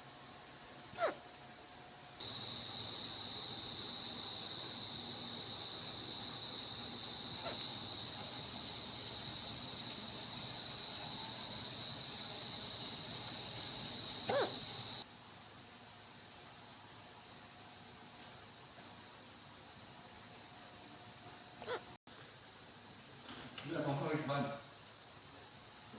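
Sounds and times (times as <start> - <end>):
high-pitched hiss: 0.0 - 21.8
squeaky hiccups: 1.0 - 1.2, 14.3 - 14.6, 21.6 - 21.9.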